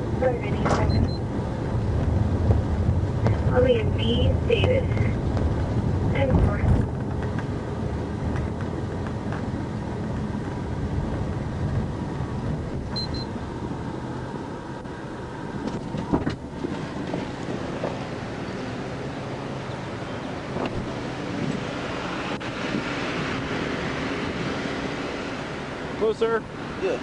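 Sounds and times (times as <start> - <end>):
car engine and road noise: 0.0 - 27.0
high double beep: 0.8 - 1.2, 13.0 - 13.3.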